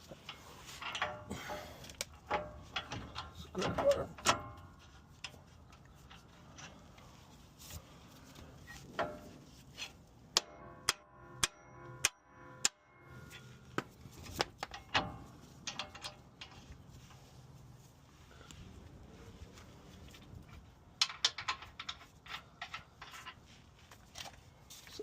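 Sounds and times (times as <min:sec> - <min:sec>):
metal-on-metal strikes: 0:10.4 - 0:13.9.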